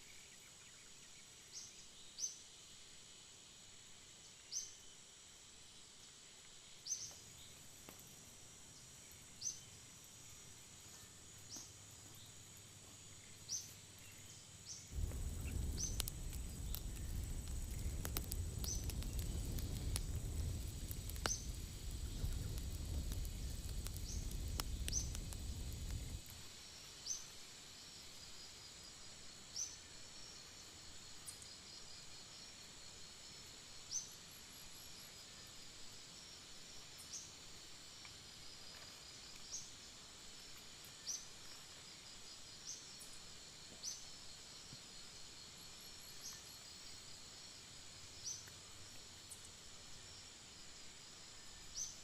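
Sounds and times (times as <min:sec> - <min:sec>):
insects droning high: 0:00.1 - 0:52.0
rough crackling noise: 0:14.9 - 0:26.4.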